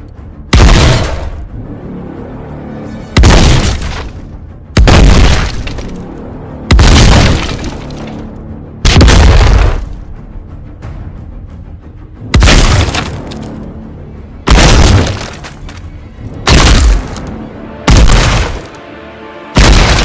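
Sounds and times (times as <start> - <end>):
background music: 0.0 - 20.0
explosion blasts: 3.2 - 4.0, 4.8 - 5.8, 6.7 - 7.8, 8.9 - 9.8, 19.6 - 20.0.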